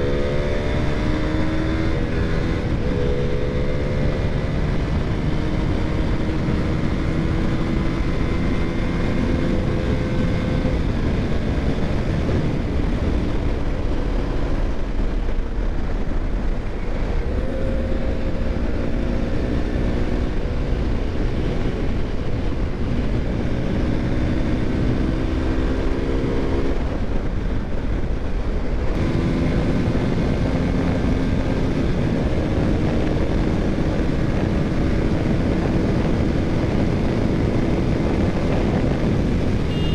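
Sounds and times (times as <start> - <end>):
motorcycle engine revving: 0.0 - 15.3, 16.4 - 27.1, 28.9 - 39.9
wind and road noise: 0.0 - 39.9.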